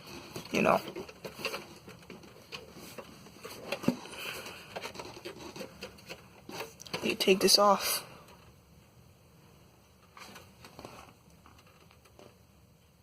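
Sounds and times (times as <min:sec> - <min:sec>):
clicks and rattles of computer parts: 0:00.0 - 0:07.4.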